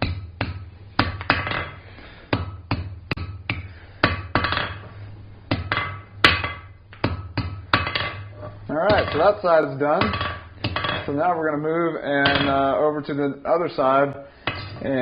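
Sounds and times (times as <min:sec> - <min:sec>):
steady low hum: 0:00.0 - 0:15.0
hammer striking hot steel on anvil: 0:05.5 - 0:11.1.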